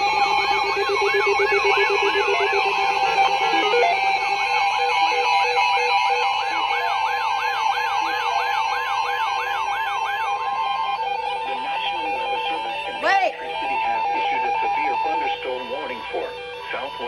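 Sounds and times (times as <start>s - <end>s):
warbling tones: 0.0s - 7.4s
siren-like whoop: 0.0s - 17.0s
steady beeping: 0.0s - 17.0s.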